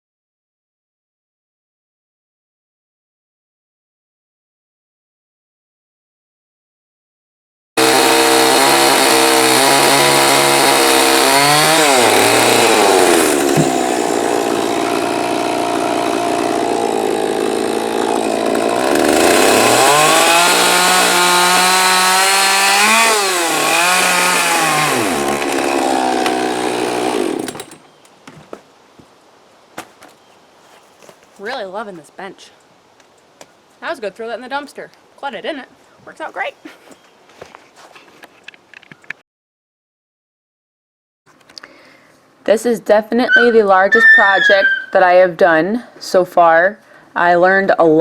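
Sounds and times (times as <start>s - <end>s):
chainsaw cutting and idling: 7.8s - 27.8s.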